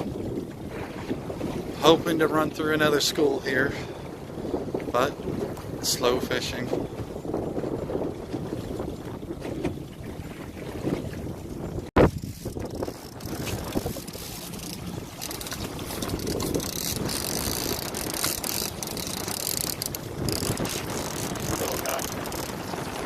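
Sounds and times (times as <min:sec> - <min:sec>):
wind buffeting microphone: 0:00.0 - 0:23.0
fishing reel clicking: 0:12.1 - 0:22.6.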